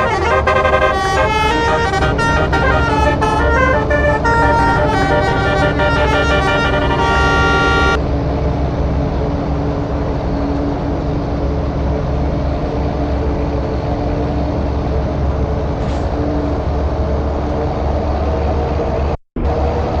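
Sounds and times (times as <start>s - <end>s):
lorry horn chord: 0.0s - 8.0s
lorry engine running: 0.0s - 20.0s
road and wind noise: 0.0s - 20.0s.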